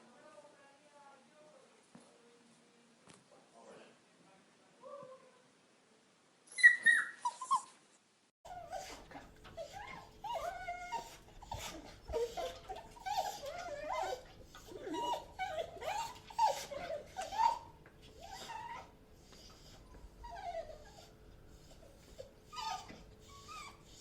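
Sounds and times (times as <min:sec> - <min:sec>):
dogs whining and whimpering: 0:06.5 - 0:07.8, 0:08.5 - 0:24.0.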